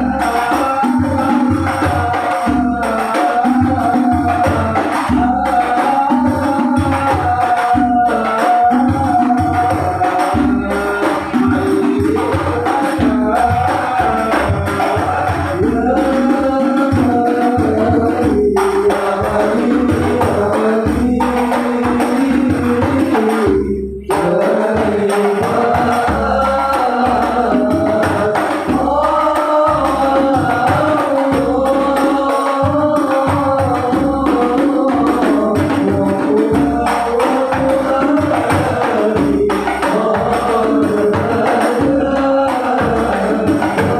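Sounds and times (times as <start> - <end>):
devotional singing: 0.0 - 43.9
frame drums beating: 0.0 - 43.9.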